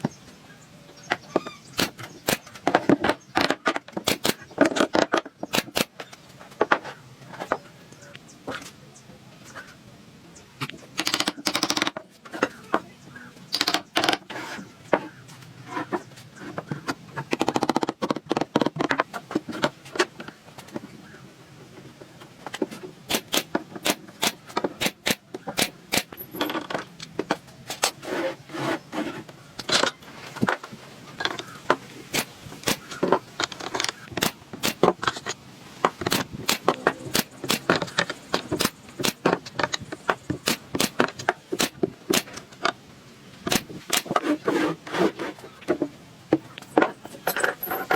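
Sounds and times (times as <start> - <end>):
clicks and knocks on wood: 15.8 - 21.0.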